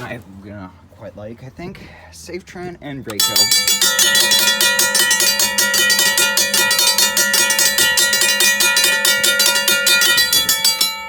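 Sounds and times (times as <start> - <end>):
railroad crossing bells ringing: 3.2 - 11.0.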